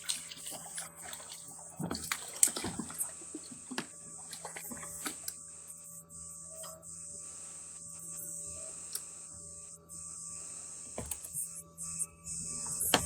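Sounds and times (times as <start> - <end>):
water splashing and sloshing: 0.0 - 5.4.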